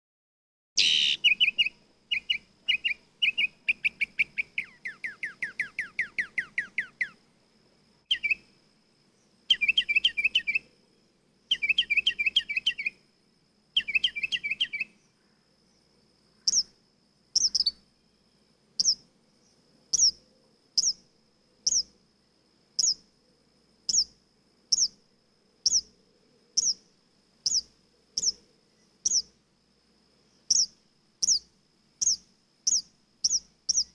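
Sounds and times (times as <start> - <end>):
mockingbird singing: 0.8 - 7.2, 8.1 - 8.4, 9.5 - 10.6, 11.5 - 13.0, 13.8 - 14.9, 16.5 - 16.7, 17.4 - 17.8, 18.8 - 19.0, 20.0 - 20.2, 20.8 - 21.0, 21.6 - 21.9, 22.8 - 23.0, 23.9 - 24.1, 24.7 - 25.0, 25.6 - 25.9, 26.6 - 26.8, 27.4 - 28.4, 29.0 - 29.3, 30.5 - 33.9
sharp bird chirp: 0.8 - 7.2, 8.1 - 8.4, 9.5 - 10.7, 11.5 - 13.0, 13.8 - 15.1, 16.4 - 16.8, 17.4 - 17.8, 18.8 - 19.0, 19.9 - 20.2, 20.8 - 22.0, 22.8 - 23.1, 23.9 - 25.0, 25.6 - 25.9, 26.6 - 29.4, 30.4 - 33.9.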